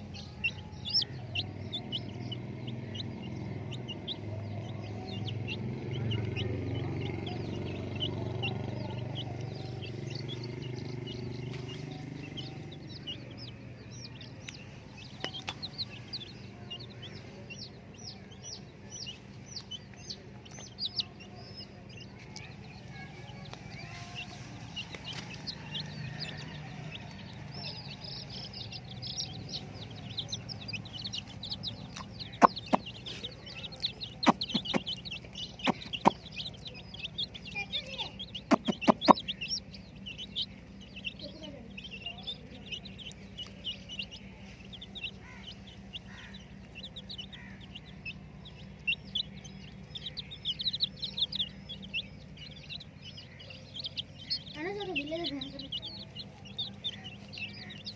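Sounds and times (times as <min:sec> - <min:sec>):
chicks peeping: 0:00.0 - 0:57.9
sharp taps: 0:31.9 - 0:33.0, 0:34.2 - 0:35.0, 0:35.6 - 0:36.2, 0:38.4 - 0:39.2.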